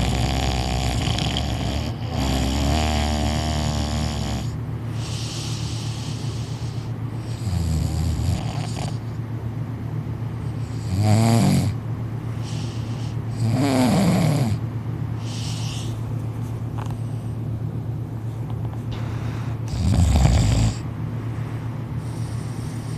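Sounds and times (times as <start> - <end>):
man snoring: 0.0 - 9.1, 10.6 - 11.8, 12.4 - 14.6, 19.7 - 20.8
breathy hissing breaths: 0.0 - 9.2, 12.2 - 14.4, 15.1 - 16.2, 18.9 - 22.9.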